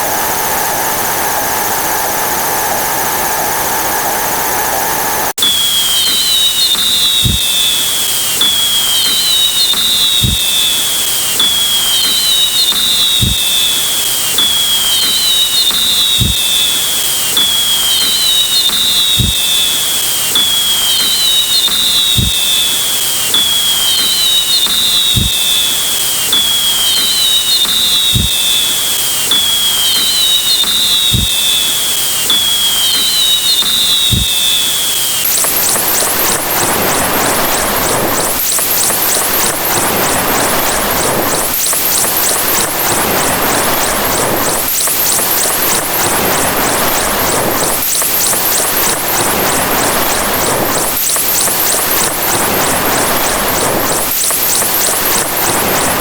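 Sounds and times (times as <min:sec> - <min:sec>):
falling whistle-like tone: 0:00.0 - 0:56.0
loud electronic hiss: 0:00.0 - 0:56.0
low thud: 0:06.8 - 0:07.7, 0:09.8 - 0:10.6, 0:12.8 - 0:13.6, 0:16.1 - 0:16.6, 0:19.2 - 0:19.6, 0:21.0 - 0:22.6, 0:24.7 - 0:25.5, 0:27.7 - 0:28.6, 0:29.4 - 0:31.6.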